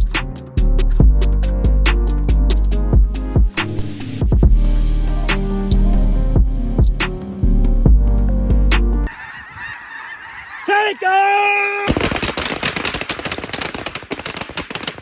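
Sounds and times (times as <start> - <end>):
music: 0.0 - 9.1
drawn-out goose-like call: 9.1 - 11.9
flock of geese calling: 9.1 - 11.9.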